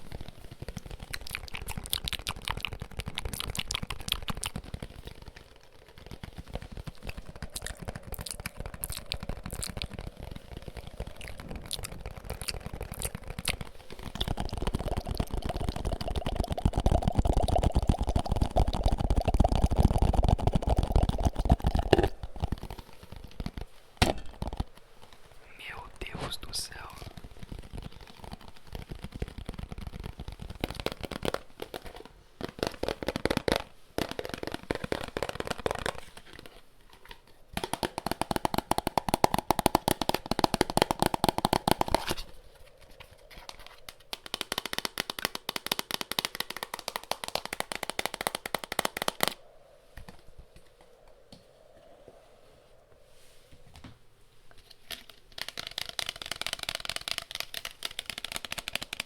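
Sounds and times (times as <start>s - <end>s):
rapid tapping on objects: 0.0s - 49.4s, 54.7s - 59.0s.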